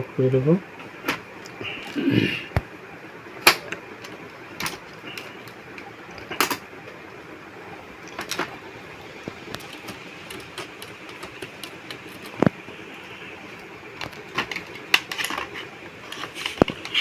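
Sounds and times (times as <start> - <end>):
low room hiss: 0.0 - 17.0
clicks and knocks of handling: 3.4 - 6.7, 8.0 - 8.6, 9.2 - 12.6, 14.0 - 17.0.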